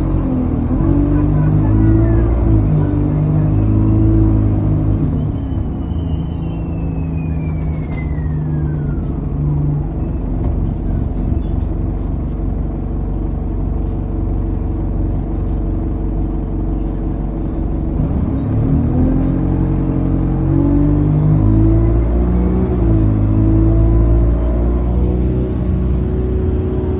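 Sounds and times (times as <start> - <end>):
turbocharger whistle: 0.0 - 11.5, 18.4 - 26.9
bus diesel engine: 0.0 - 26.9.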